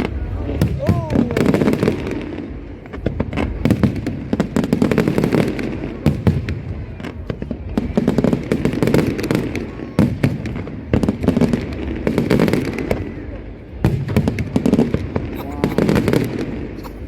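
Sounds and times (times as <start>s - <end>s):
heavy low rumble: 0.0s - 4.6s
fireworks bursting: 0.0s - 17.0s.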